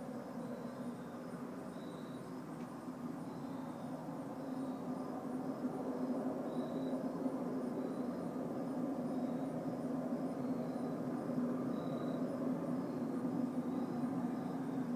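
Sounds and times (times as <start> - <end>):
faint high ticks: 2.6 - 2.8.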